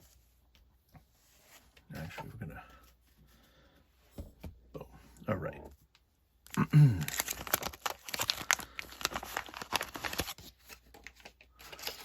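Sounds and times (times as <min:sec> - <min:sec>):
wrapper crinkling and tearing: 0:06.6 - 0:12.0.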